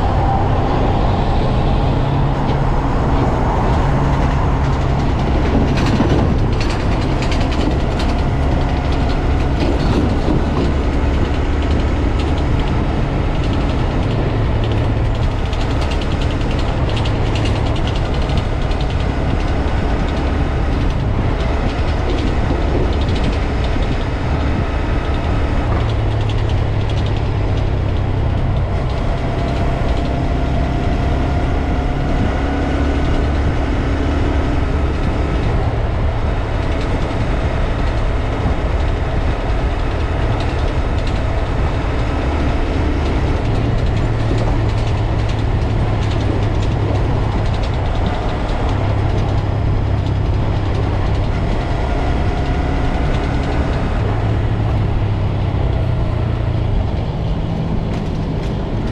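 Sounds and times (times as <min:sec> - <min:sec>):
motorcycle gearbox whir and rattle: 0:00.0 - 0:58.9.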